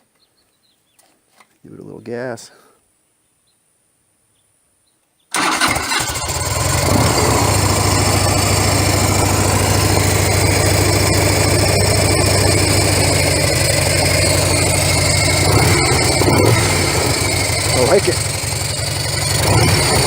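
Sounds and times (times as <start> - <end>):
motorcycle engine starting and idling: 5.3 - 20.0.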